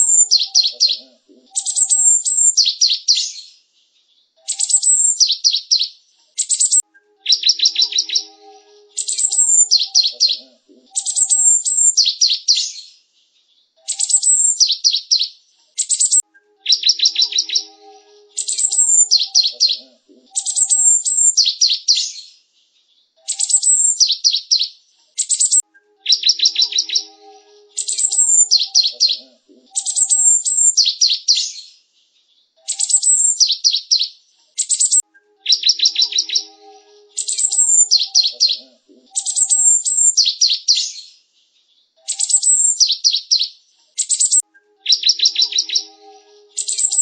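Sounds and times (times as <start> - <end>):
bird singing high notes: 0.0 - 3.0, 6.6 - 12.4, 16.0 - 21.8, 25.4 - 31.2, 34.8 - 40.3, 44.2 - 47.0
sharp bird chirps: 0.0 - 3.6, 4.4 - 13.0, 13.8 - 22.3, 23.2 - 31.7, 32.6 - 41.1, 42.0 - 47.0.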